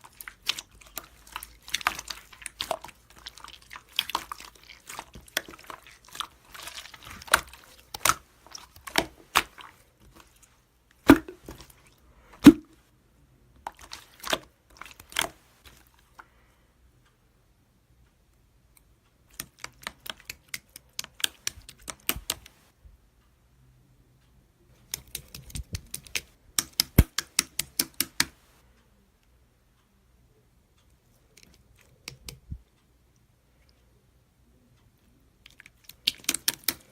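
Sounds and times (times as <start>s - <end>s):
typing on a keyboard: 24.9s - 28.3s.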